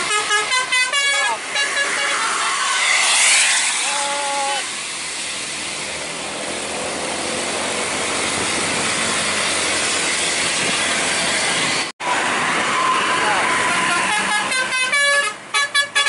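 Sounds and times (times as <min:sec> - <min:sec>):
vehicle horn toot: 0:00.0 - 0:02.4, 0:14.0 - 0:16.0
road and wind noise: 0:00.0 - 0:16.0.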